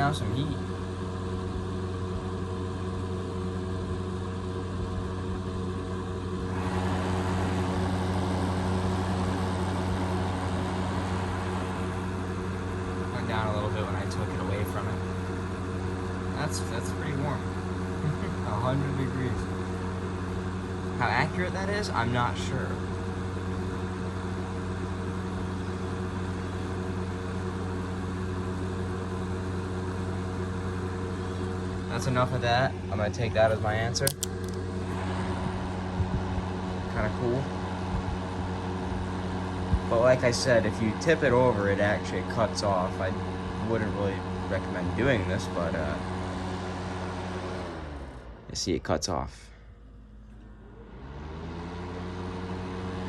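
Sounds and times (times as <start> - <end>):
heater fan motor humming: 0.0 - 53.0.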